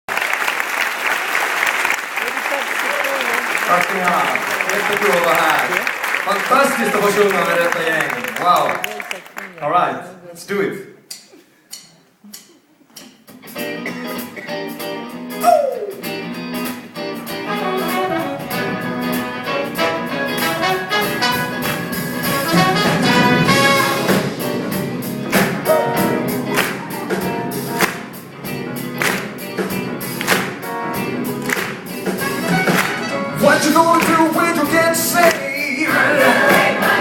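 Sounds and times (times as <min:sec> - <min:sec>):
live band playing gospel: 0:01.9 - 0:09.2, 0:13.0 - 0:37.0
drums beating: 0:11.8 - 0:37.0.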